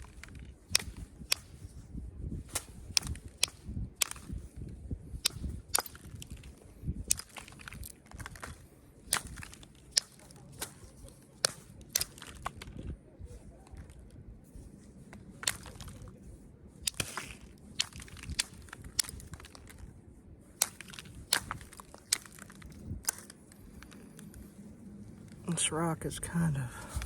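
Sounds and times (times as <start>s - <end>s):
flint flakes snapping: 0.0s - 1.8s, 2.4s - 4.6s, 5.2s - 12.8s, 15.1s - 16.1s, 16.8s - 19.9s, 20.6s - 24.5s.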